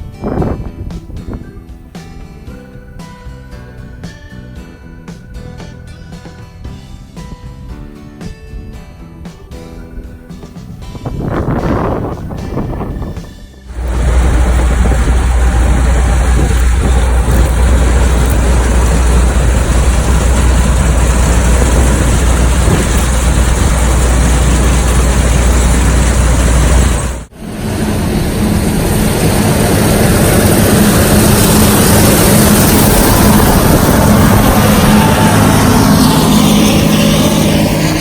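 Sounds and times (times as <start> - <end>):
vehicle engines running: 13.6 - 38.0
machine droning hum: 13.7 - 38.0.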